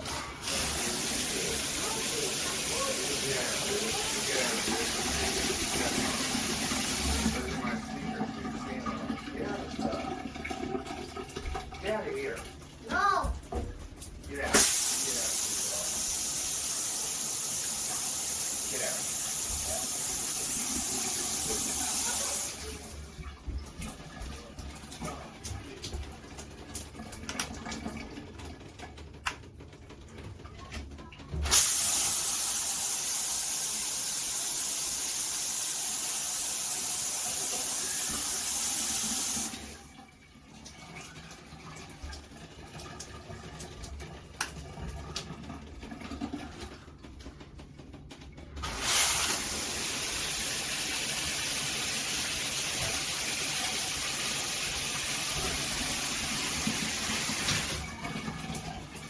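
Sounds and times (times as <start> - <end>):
shower spraying water: 0.0 - 7.8, 11.4 - 27.9, 31.3 - 39.9, 48.6 - 59.0.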